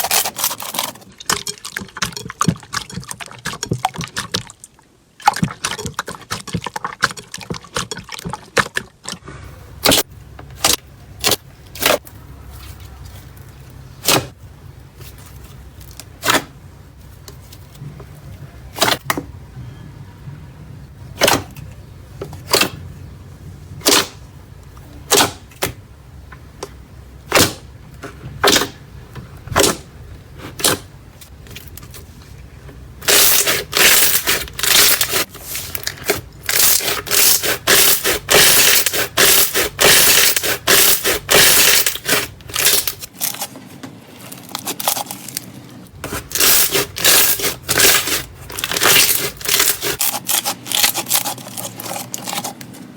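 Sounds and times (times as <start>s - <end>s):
slime crackling and crunching: 0.0s - 2.9s, 44.1s - 52.6s.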